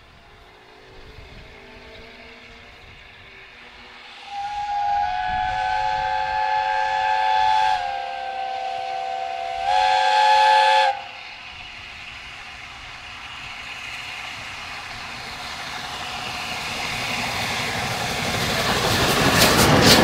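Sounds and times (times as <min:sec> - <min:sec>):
steam locomotive whistle: 0:04.2 - 0:11.3.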